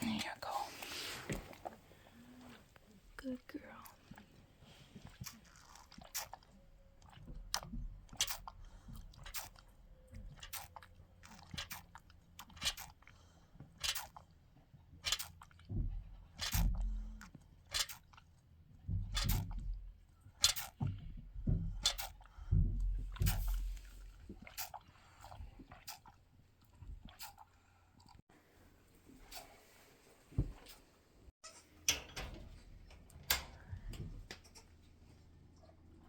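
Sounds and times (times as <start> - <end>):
goat crunching and chewing feed: 0.2 - 3.0, 4.0 - 27.5.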